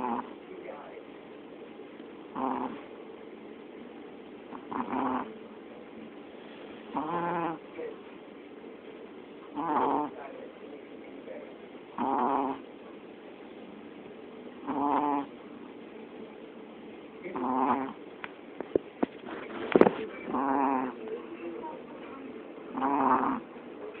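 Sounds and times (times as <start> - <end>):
dog snoring: 0.0 - 0.4, 2.3 - 2.9, 4.5 - 5.4, 6.9 - 7.7, 9.5 - 10.3, 11.9 - 12.7, 14.6 - 15.4, 17.3 - 18.0, 20.1 - 21.0, 22.7 - 23.5.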